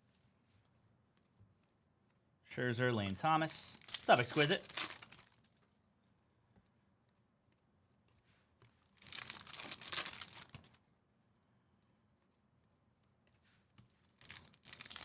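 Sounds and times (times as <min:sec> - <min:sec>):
foil wrapper tearing and crinkling: 0:03.7 - 0:05.6, 0:09.0 - 0:10.8, 0:14.2 - 0:15.0.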